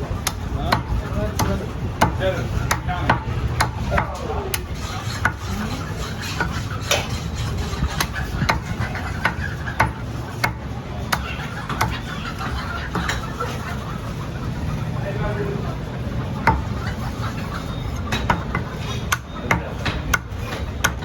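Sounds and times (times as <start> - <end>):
faint voices: 0.0 - 21.0
cleaver chopping on wooden block: 0.3 - 5.4, 18.1 - 21.0.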